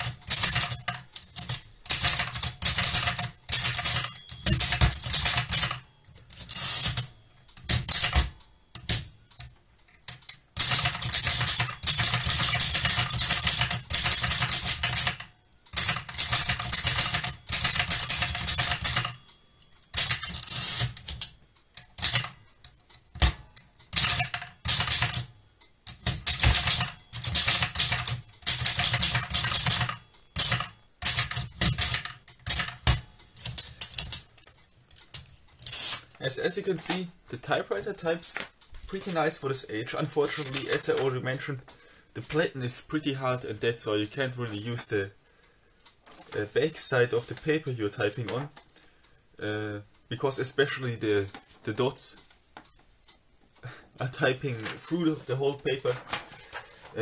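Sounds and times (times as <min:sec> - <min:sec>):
typewriter keystrokes: 0:00.0 - 0:25.3, 0:25.9 - 0:36.1.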